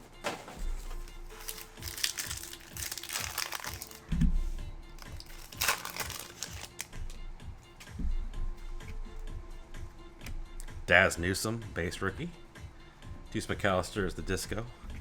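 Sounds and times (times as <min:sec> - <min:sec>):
quiet background music: 0:00.0 - 0:15.0
plastic wrapping crinkling: 0:00.2 - 0:04.0, 0:05.0 - 0:06.9.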